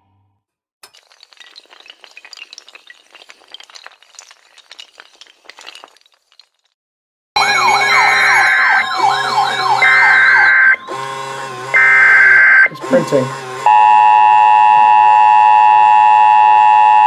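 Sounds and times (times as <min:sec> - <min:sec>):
emergency vehicle sirens: 0:07.4 - 0:17.0.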